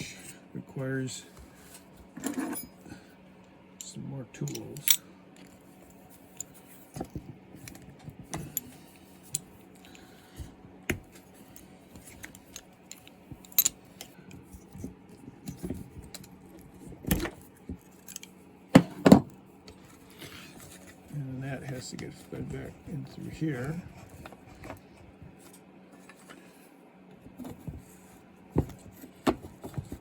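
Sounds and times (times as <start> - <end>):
metal parts clicking and clinking: 3.8 - 5.6, 6.3 - 6.6, 11.5 - 14.8, 17.1 - 18.4.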